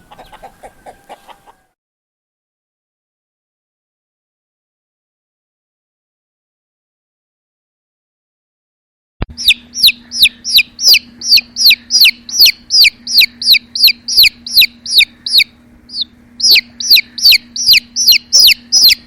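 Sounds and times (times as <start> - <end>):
chick peeping: 0.0 - 1.8, 9.3 - 19.0.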